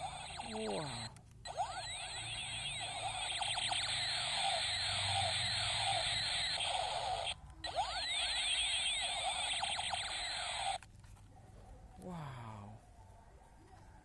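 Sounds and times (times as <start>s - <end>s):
toy gun laser zaps: 0.0s - 10.8s.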